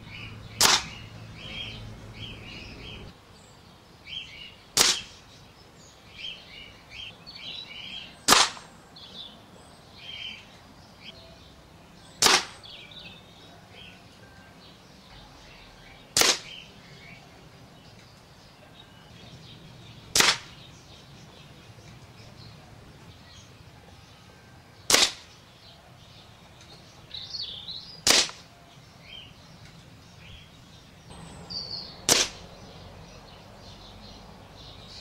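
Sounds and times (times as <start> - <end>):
small birds chirping: 0.0 - 35.0
air rifle shots: 0.5 - 1.2, 4.8 - 5.2, 8.2 - 8.8, 12.2 - 12.7, 16.1 - 16.7, 20.1 - 20.7, 24.9 - 25.4, 28.0 - 28.5, 31.5 - 32.8.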